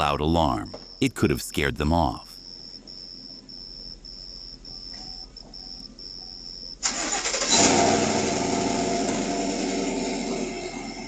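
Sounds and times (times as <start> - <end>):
crickets chirping: 0.0 - 11.0
truck engine cranking and running: 6.8 - 11.0.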